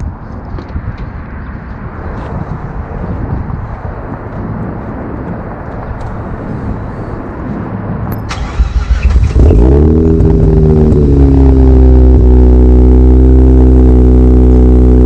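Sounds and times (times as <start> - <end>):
rotary engine cranking and starting: 8.1 - 10.4.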